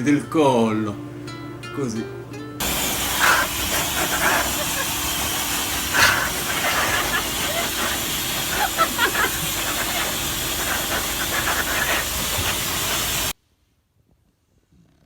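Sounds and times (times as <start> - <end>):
loud hissing noise: 2.6 - 13.4.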